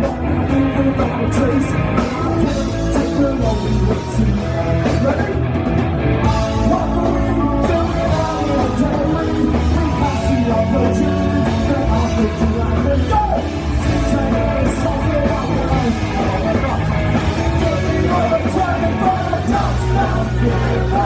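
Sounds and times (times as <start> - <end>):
rock band playing: 0.0 - 21.0
person singing: 6.5 - 21.0.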